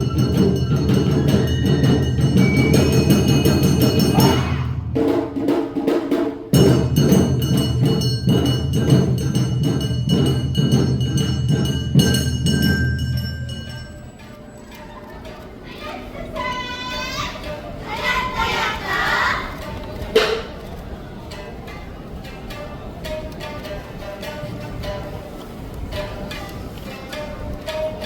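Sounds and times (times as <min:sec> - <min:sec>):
clanging gong: 0:00.0 - 0:04.7, 0:06.5 - 0:14.8
high flute: 0:00.0 - 0:04.8
drums: 0:00.0 - 0:14.2, 0:17.8 - 0:20.6.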